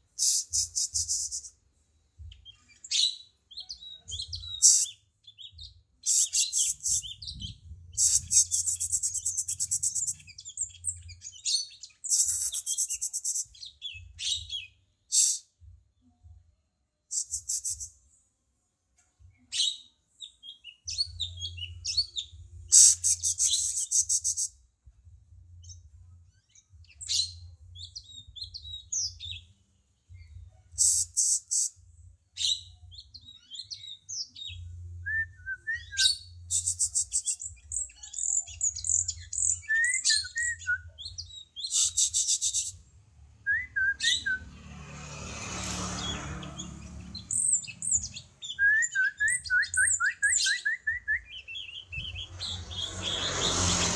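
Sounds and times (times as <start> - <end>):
bird chirping and trilling: 2.4 - 15.4, 19.5 - 24.5, 32.4 - 42.8, 45.6 - 53.9.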